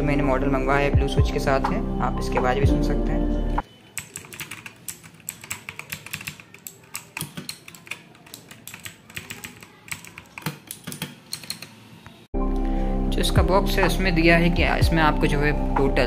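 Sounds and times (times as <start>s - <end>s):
mechanical keyboard keystroke clicks: 4.0s - 11.7s.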